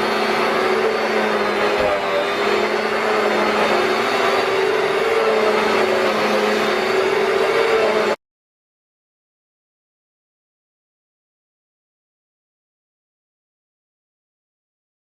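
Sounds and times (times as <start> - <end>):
vacuum cleaner running: 0.0 - 8.2.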